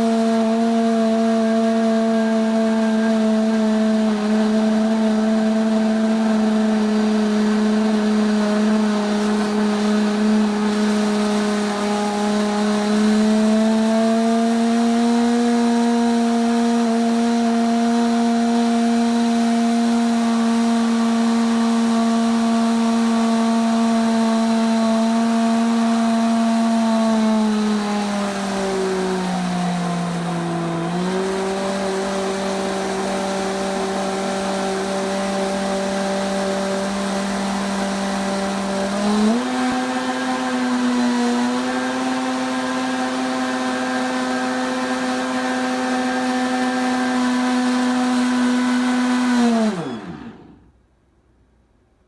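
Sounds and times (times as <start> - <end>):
blender motor whining: 0.0 - 50.8.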